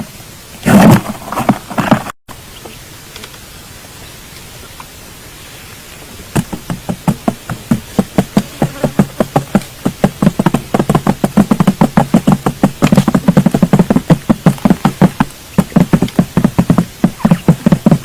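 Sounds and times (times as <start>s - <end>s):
rapid sharp knocks: 6.4s - 18.0s.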